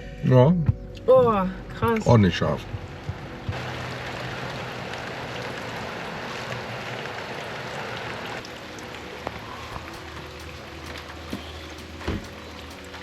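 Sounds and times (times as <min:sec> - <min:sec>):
road and engine noise in car: 0:00.0 - 0:13.0.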